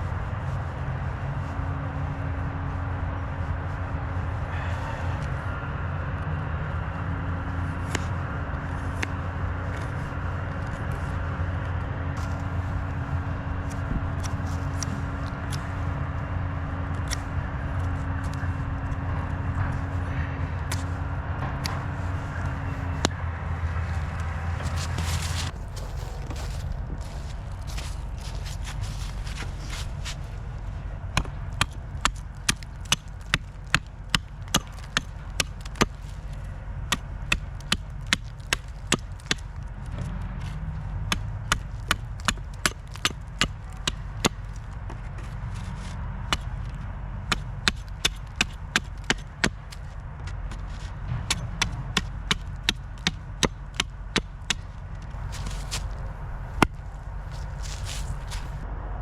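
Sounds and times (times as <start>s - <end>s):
hand tool striking: 20.7s - 21.0s.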